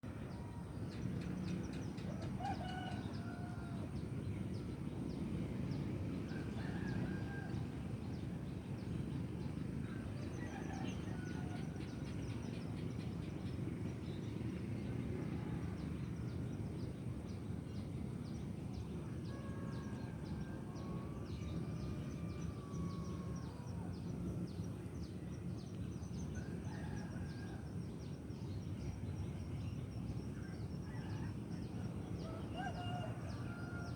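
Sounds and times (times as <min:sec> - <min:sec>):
distant chickens: 0:01.3 - 0:04.0, 0:19.2 - 0:23.9, 0:32.1 - 0:33.9
rooster crowing: 0:02.4 - 0:03.8, 0:32.2 - 0:33.9.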